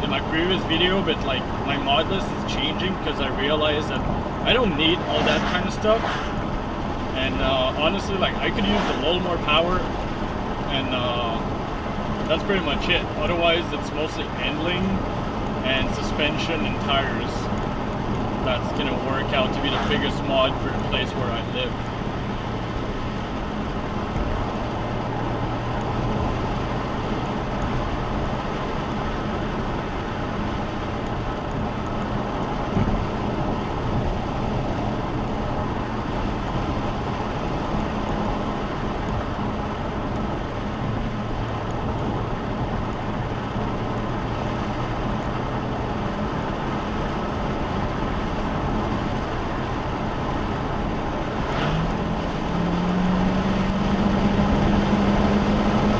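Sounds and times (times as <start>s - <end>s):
car engine hum: 0.0s - 55.9s
road and tyre noise: 0.0s - 55.9s.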